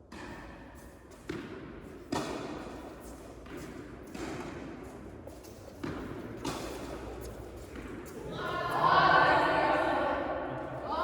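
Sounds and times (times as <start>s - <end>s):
tennis ball thuds with echo: 1.2s - 2.7s, 5.8s - 8.0s.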